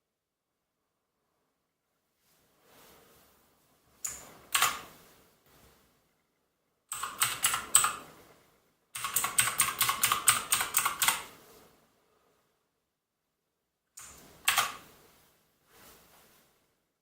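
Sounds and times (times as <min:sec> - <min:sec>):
mechanical keyboard keystrokes: 0:04.5 - 0:04.8, 0:06.9 - 0:08.0, 0:09.0 - 0:11.3, 0:14.0 - 0:14.8.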